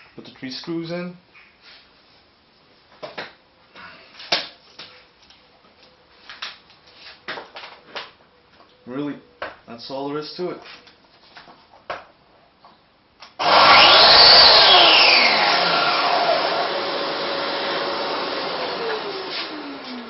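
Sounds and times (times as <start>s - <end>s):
plunge saw motor whining: 13.4s - 20.0s.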